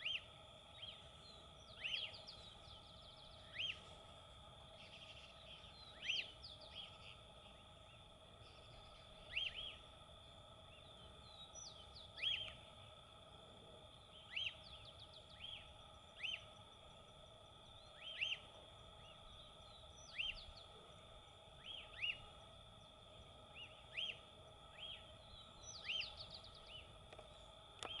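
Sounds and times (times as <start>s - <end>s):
bird calling: 0.0s - 3.9s, 4.7s - 9.9s, 10.7s - 12.6s, 14.2s - 16.6s, 17.8s - 21.0s, 21.6s - 22.4s, 23.5s - 28.0s
high background hum: 0.0s - 28.0s.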